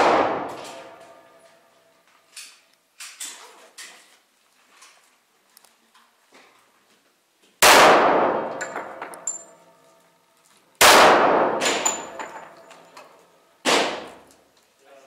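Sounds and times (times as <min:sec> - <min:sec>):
pistol shots echoing: 0:00.0 - 0:01.2, 0:07.6 - 0:09.6, 0:10.8 - 0:12.7, 0:13.6 - 0:14.2.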